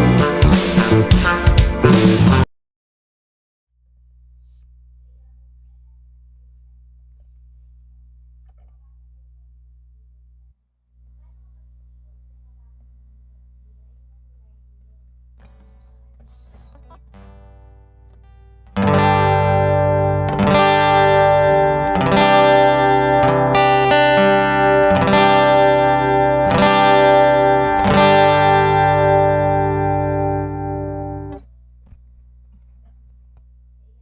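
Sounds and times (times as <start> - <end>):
acoustic guitar chords strummed: 0.0 - 2.5, 15.4 - 31.5.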